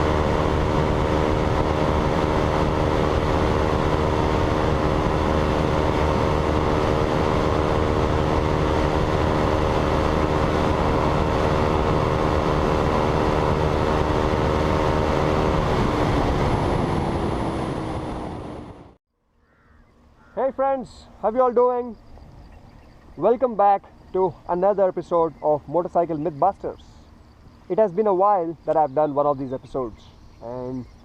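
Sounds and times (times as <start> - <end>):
wind noise: 0.0 - 19.0
motorcycle engine running: 0.0 - 20.4.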